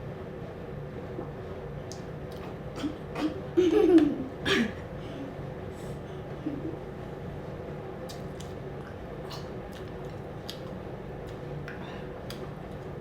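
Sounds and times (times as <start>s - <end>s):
low background hum: 0.0s - 13.0s
wet chewing sounds: 8.1s - 12.5s.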